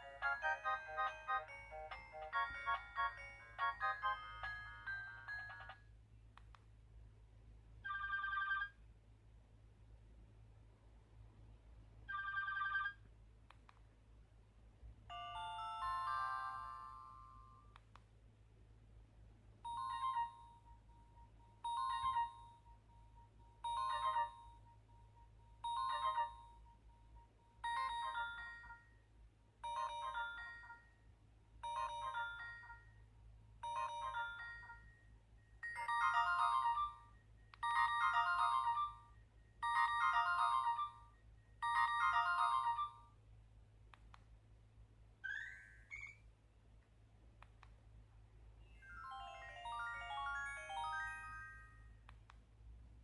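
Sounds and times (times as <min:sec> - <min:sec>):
phone ringtone melody: 0:00.0 - 0:05.8, 0:15.1 - 0:17.6, 0:19.7 - 0:26.7, 0:27.6 - 0:28.9, 0:29.6 - 0:30.9, 0:31.6 - 0:32.9, 0:33.6 - 0:35.0, 0:35.6 - 0:43.1, 0:48.8 - 0:51.9.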